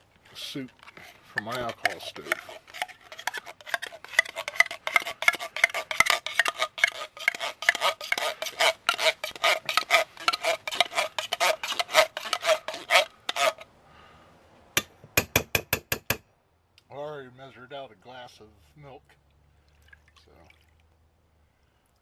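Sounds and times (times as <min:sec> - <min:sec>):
metal scraping and clinking: 0:00.4 - 0:13.6.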